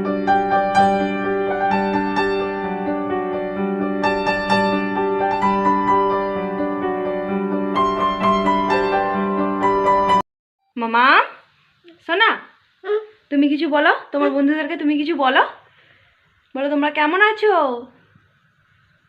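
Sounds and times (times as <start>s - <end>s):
keyboard or piano melody: 0.0s - 10.2s.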